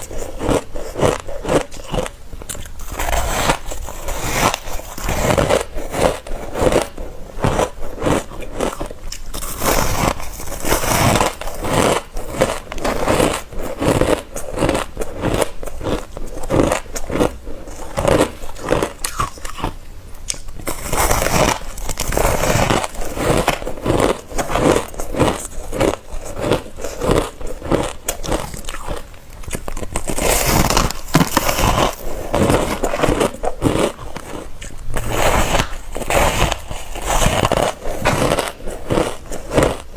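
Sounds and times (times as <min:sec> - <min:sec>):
ice crunching between teeth: 0:00.0 - 0:39.9.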